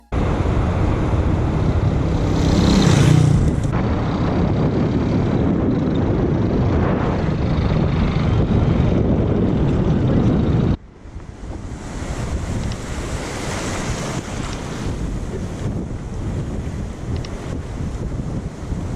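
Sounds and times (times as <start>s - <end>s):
wind buffeting microphone: 0.0s - 18.9s
surf rushing: 11.3s - 18.9s.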